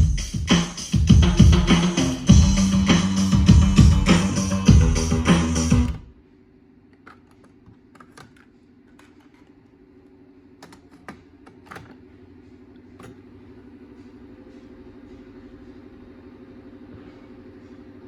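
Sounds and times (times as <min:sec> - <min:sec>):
music: 0:00.0 - 0:06.1.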